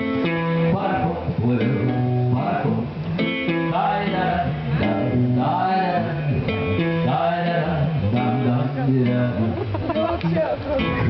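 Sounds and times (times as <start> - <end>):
live band with guitar: 0.0 - 11.0
person singing: 3.5 - 11.0.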